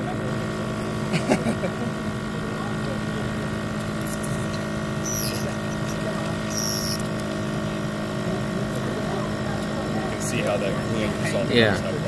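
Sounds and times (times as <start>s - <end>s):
steady hum of held tones: 0.0s - 12.0s
high-pitched squeaks: 5.0s - 7.1s.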